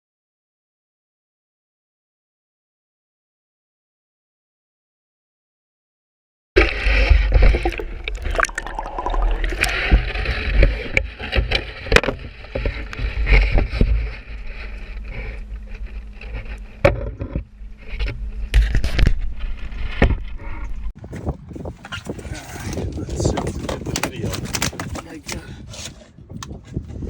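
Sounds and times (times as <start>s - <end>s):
faint steady hum: 6.6s - 20.9s
water sloshing: 7.2s - 17.1s
wind buffeting microphone: 18.3s - 27.0s.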